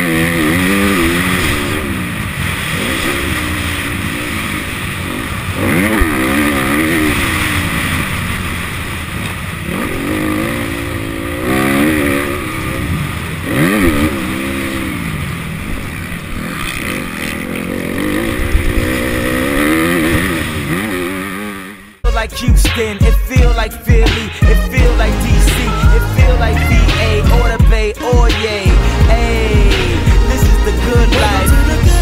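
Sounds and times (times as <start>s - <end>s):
motorbike engine revving: 0.0s - 22.1s, 22.8s - 32.0s
steady rush of noise: 0.0s - 22.1s.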